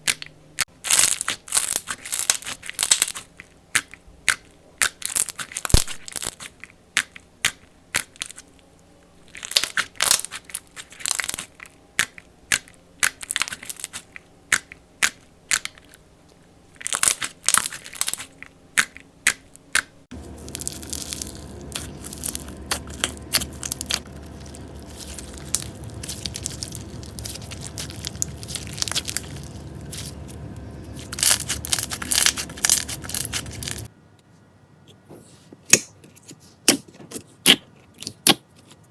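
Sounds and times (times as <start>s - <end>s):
slime crackling and popping: 0.0s - 8.4s, 9.3s - 16.0s, 16.8s - 33.9s
steady low hum: 17.4s - 35.2s.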